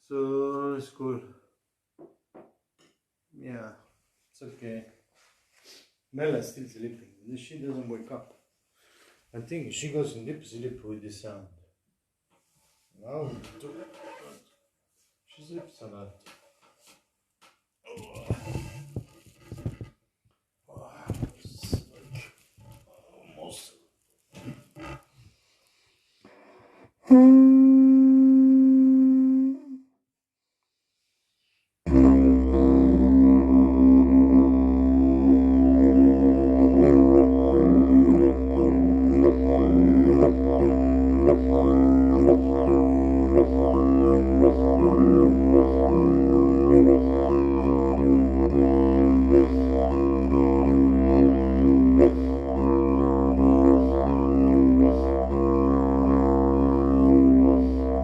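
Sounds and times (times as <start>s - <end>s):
didgeridoo drone: 31.9s - 58.0s.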